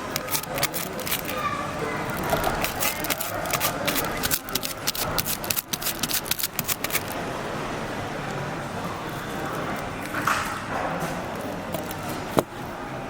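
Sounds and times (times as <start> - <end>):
rapid clicking and tapping: 0.0 - 1.4, 2.1 - 7.2
steady background noise: 0.0 - 13.0.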